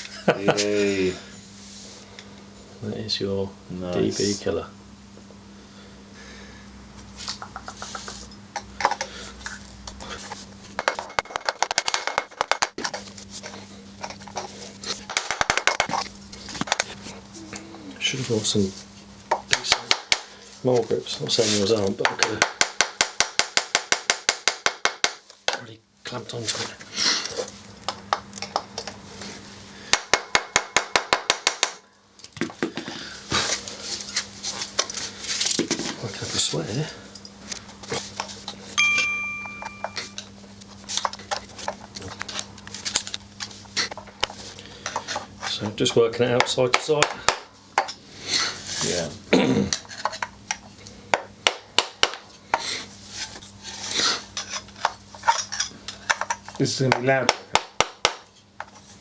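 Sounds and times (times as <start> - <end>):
hand tools clinking on metal: 38.8 - 40.3.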